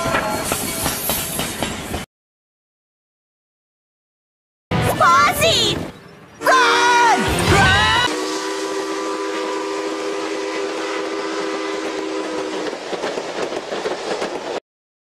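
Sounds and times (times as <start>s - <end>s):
steam train chime whistle: 6.4s - 12.8s.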